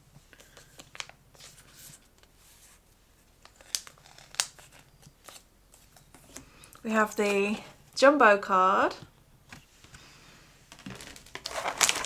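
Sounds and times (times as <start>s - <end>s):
plastic and cardboard crinkling: 3.3s - 6.4s, 10.7s - 12.0s.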